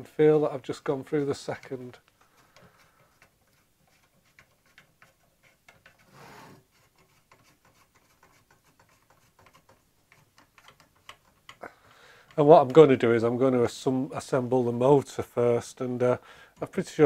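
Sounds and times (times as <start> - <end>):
lead screw clicking and rubbing: 1.2 - 11.6.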